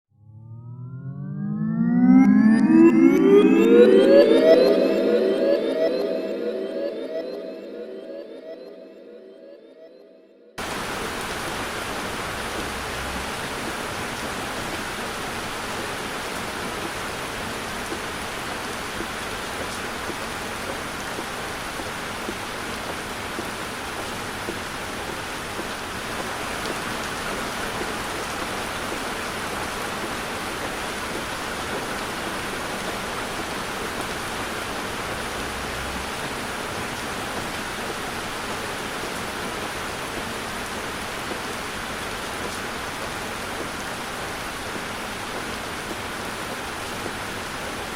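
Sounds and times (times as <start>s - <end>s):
heavy rain falling on a car: 10.6s - 47.9s.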